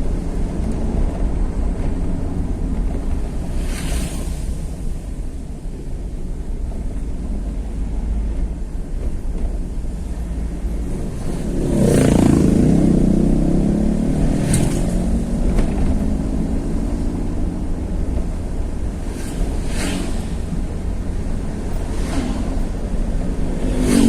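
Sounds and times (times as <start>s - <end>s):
road and wind rumble: 0.0s - 24.0s
short swishes: 19.0s - 20.5s.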